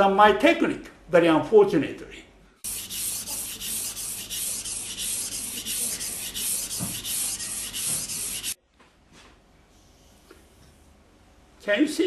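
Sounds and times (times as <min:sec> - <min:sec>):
knife rasping on whetstone: 0:02.6 - 0:08.6.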